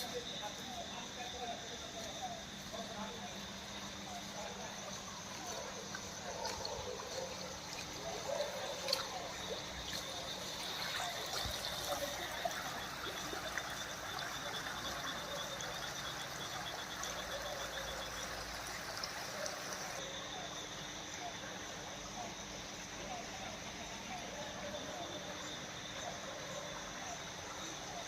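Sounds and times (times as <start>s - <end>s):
rainwater trickling: 3.4s - 20.0s
water drips and splashes: 3.6s - 20.0s.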